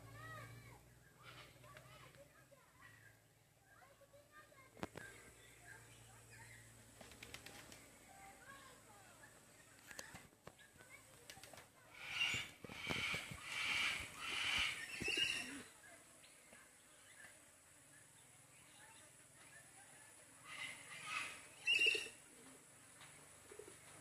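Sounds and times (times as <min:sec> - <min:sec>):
bird calling: 0:11.9 - 0:15.7, 0:20.4 - 0:22.7.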